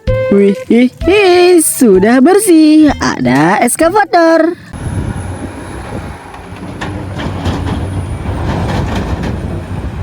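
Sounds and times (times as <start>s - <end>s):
large vehicle engine running: 4.7s - 10.0s.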